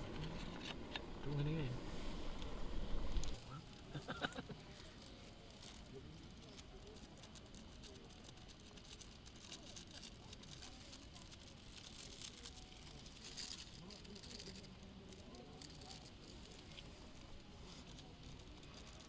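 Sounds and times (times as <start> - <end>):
low background rumble: 0.0 - 5.6
faint distant voices: 0.0 - 19.0
small clicks and rustles: 0.0 - 19.0.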